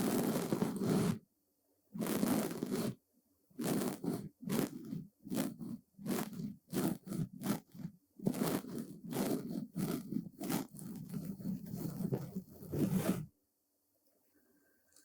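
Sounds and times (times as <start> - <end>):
brush strokes swishing: 3.6 - 13.3.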